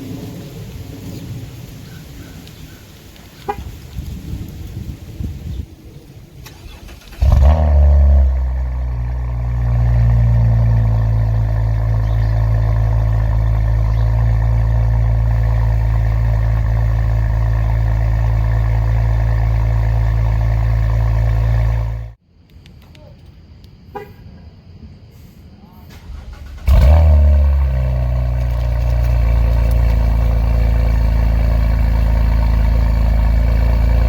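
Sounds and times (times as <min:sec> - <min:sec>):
car engine starting and idling: 0:06.3 - 0:22.2, 0:25.9 - 0:34.0.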